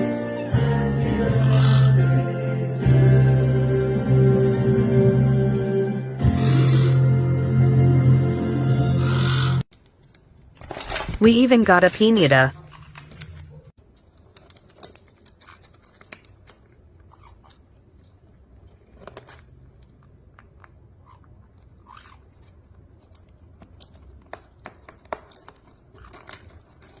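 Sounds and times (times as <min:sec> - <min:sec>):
parrot tearing paper: 0:12.5 - 0:27.0.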